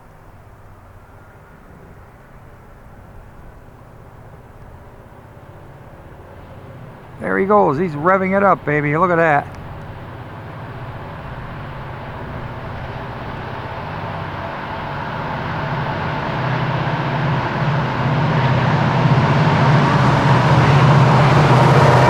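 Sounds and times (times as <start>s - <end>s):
diesel locomotive engine drone: 0.0s - 22.0s.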